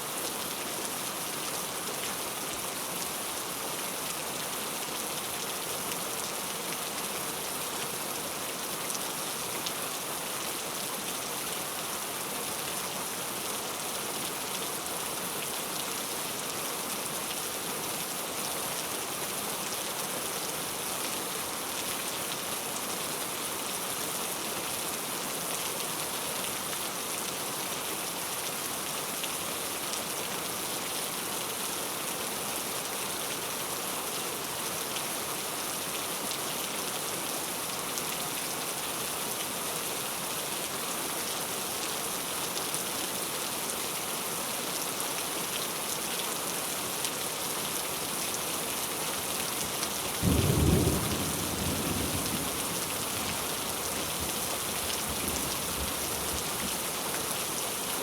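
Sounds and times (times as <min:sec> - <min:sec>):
heavy rain falling: 0:44.8 - 0:58.0
low rumble of thunder: 0:50.1 - 0:56.8.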